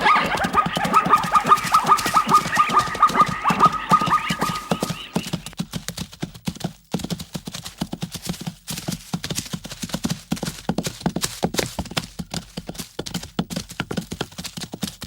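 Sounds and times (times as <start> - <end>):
high repeated call: 0.0 - 5.6
hooves clip-clopping: 0.0 - 15.0.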